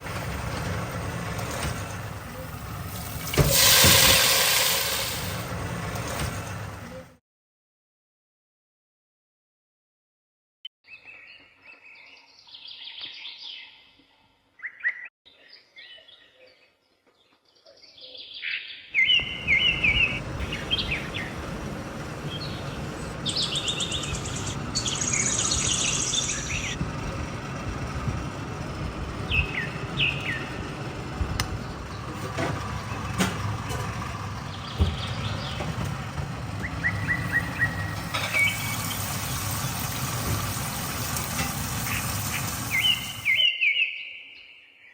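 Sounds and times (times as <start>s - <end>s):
small birds chirping: 10.9s - 26.8s, 29.2s - 30.7s, 34.3s - 35.8s, 36.5s - 40.2s, 41.7s - 44.4s
low rumbling background noise: 19.0s - 43.4s.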